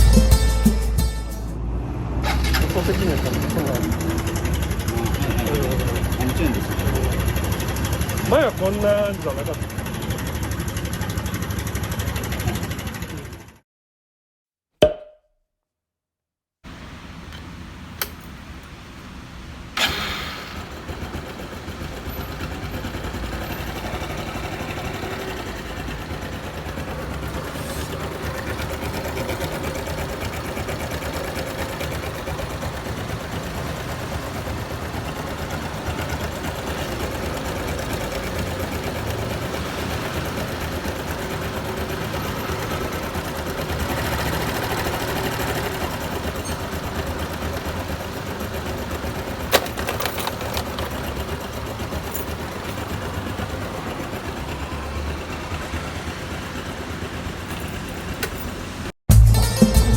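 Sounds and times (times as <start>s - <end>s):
motorcycle engine starting and idling: 0.0s - 13.6s, 16.7s - 59.9s
engine mechanical ticking: 2.2s - 13.4s, 19.8s - 58.6s.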